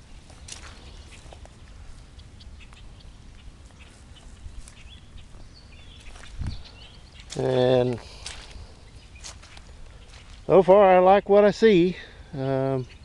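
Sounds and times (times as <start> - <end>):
low wind rumble: 0.0 - 12.3
bird chirps: 0.1 - 11.3, 12.0 - 13.0.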